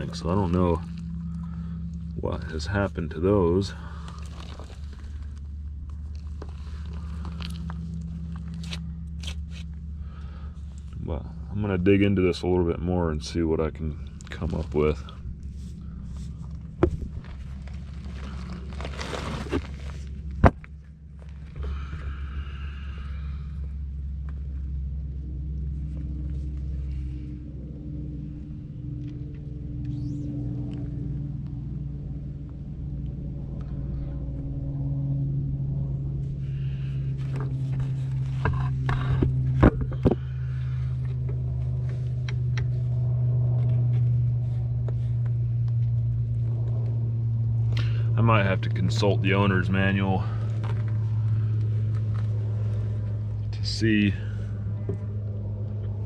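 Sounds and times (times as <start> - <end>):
steady low hum: 0.0 - 56.0
shuffling and handling noises: 3.5 - 9.9, 13.9 - 21.6, 37.1 - 42.8.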